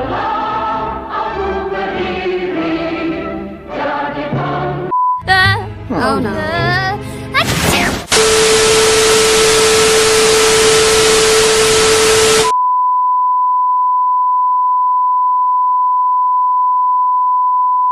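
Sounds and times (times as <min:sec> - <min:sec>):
high-pitched test tone: 0:08.1 - 0:12.5
tv static hiss: 0:08.1 - 0:12.5.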